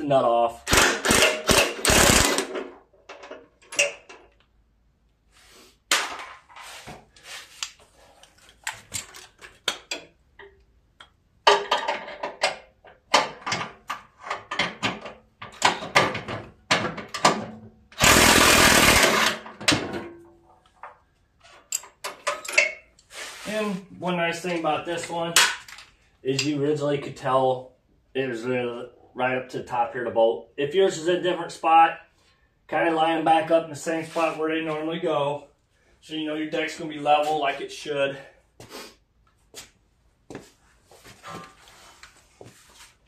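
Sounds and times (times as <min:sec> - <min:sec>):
impact wrench bursts: 0:00.6 - 0:02.7, 0:18.0 - 0:19.6.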